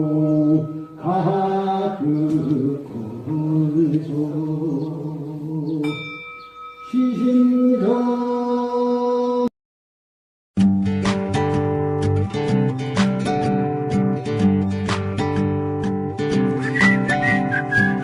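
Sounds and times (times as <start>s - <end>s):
person chanting slow melody: 0.0s - 6.2s, 6.9s - 9.5s
bell ringing tone: 5.8s - 9.0s.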